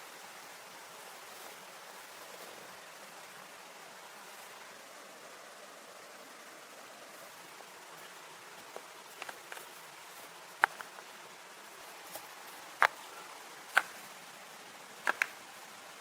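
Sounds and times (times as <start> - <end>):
steady background hiss: 0.0 - 16.0
sharp clicks and knocks: 10.6 - 11.1, 15.0 - 15.4.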